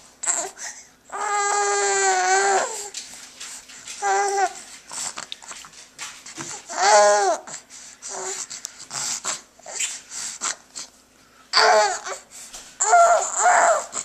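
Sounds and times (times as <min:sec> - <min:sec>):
baby babbling: 0:00.2 - 0:02.9, 0:06.6 - 0:08.5, 0:11.5 - 0:12.2, 0:12.8 - 0:14.0
baby squealing: 0:12.8 - 0:14.0.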